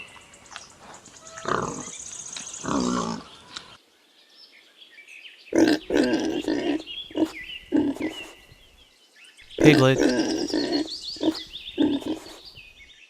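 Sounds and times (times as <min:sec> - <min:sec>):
pig grunting: 0:01.4 - 0:02.0, 0:02.6 - 0:03.3, 0:05.6 - 0:08.4, 0:09.6 - 0:12.6.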